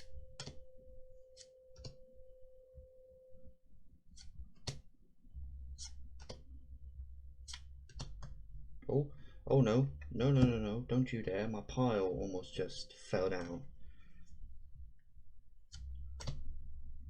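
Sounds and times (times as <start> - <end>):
faint steady hum: 0.0 - 17.0
low rumble: 5.2 - 17.0
trading cards being handled: 5.8 - 6.5.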